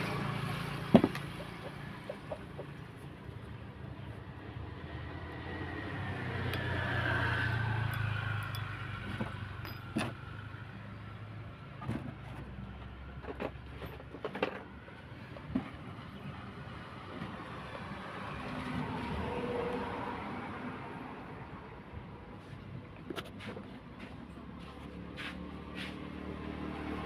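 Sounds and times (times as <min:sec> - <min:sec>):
vehicle engine passing by: 0:00.0 - 0:03.3, 0:04.6 - 0:09.6, 0:24.0 - 0:27.0.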